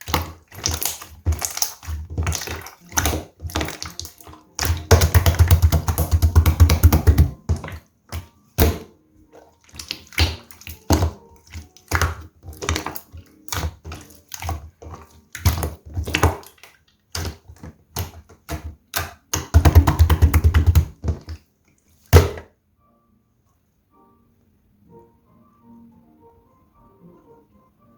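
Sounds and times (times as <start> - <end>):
wet pops and clicks: 0.0 - 21.4, 22.1 - 22.5
slime squished by hand: 0.0 - 22.5.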